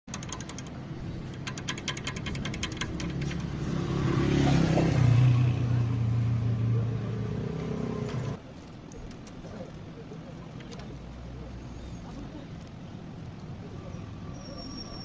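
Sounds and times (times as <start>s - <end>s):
brake pad ticking: 0.0s - 3.6s
car engine and road hum: 0.0s - 8.5s.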